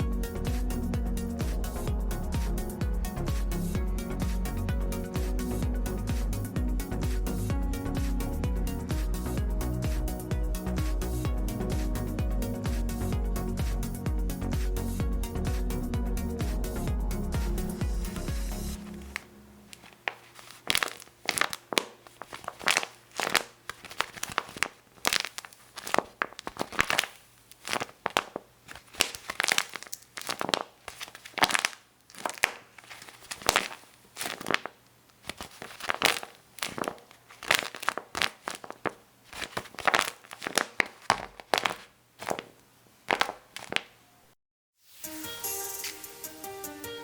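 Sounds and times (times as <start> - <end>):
paper crinkling and crackling: 5.1 - 5.5, 17.8 - 44.4.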